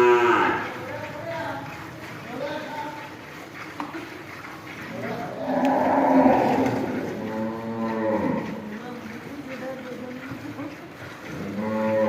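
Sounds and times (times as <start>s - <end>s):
cow mooing: 0.0s - 1.7s, 4.9s - 8.8s, 11.3s - 12.0s.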